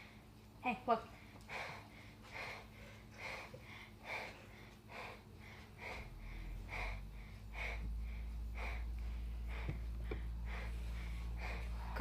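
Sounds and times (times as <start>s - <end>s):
person breathing heavily: 1.1s - 12.0s
low rumble: 5.4s - 12.0s.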